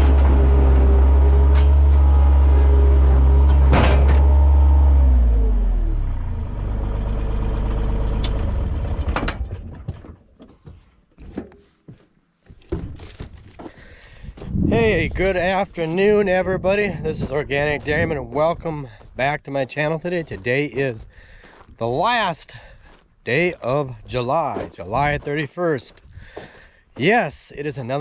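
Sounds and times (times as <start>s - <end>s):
large engine running: 0.0s - 9.9s.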